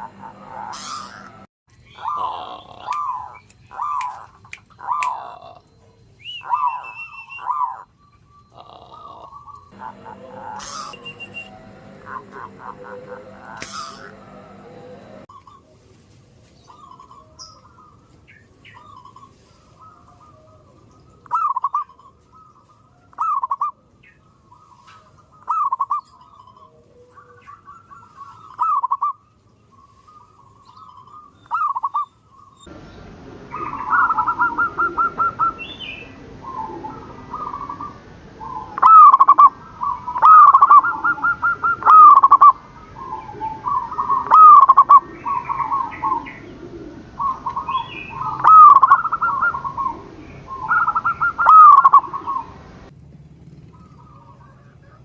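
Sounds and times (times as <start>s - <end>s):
dove cooing: 0.0s - 15.9s, 16.7s - 23.8s, 24.5s - 29.2s, 29.8s - 55.0s
background noise: 15.3s - 53.5s.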